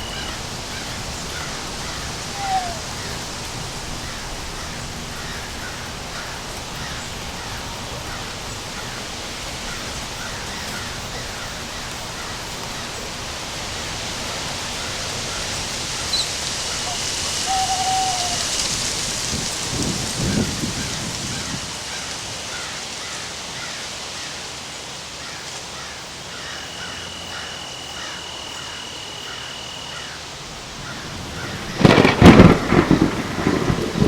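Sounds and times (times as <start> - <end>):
whistled bird call: 0.0 - 0.4, 2.3 - 3.2, 15.4 - 18.6
steady rain falling: 0.0 - 34.0
faint bird chirps: 16.1 - 18.6.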